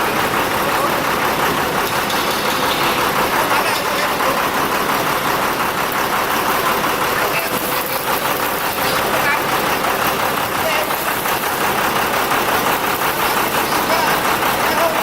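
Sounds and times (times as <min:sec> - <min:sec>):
diesel generator running: 0:00.0 - 0:15.0.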